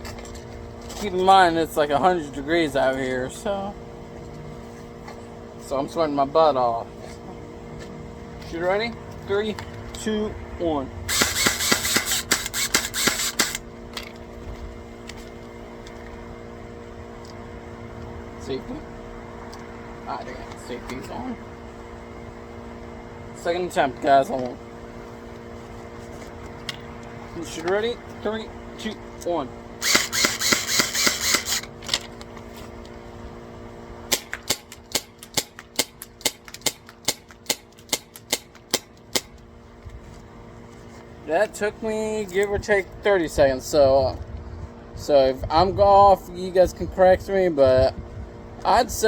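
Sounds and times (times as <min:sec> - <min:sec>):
steady low hum: 0:00.0 - 0:49.0
rapid airsoft gunfire: 0:11.1 - 0:13.6, 0:29.8 - 0:31.6.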